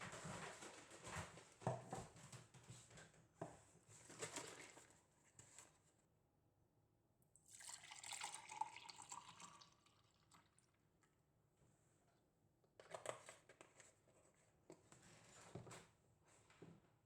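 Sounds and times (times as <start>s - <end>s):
faint running water: 7.4s - 10.8s
soft handling noises: 12.8s - 16.9s.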